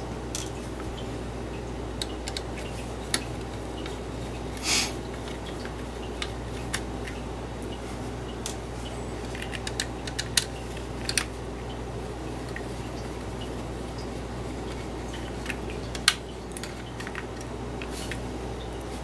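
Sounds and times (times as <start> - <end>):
screwdriver clicking on plastic: 2.0 - 2.5, 9.3 - 11.3.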